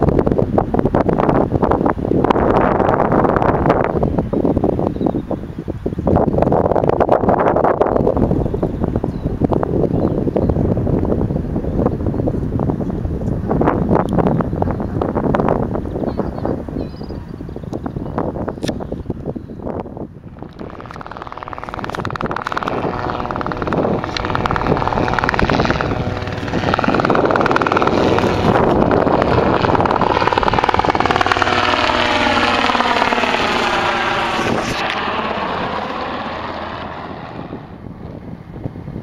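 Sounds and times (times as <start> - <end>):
aircraft engine passing: 18.4 - 39.0.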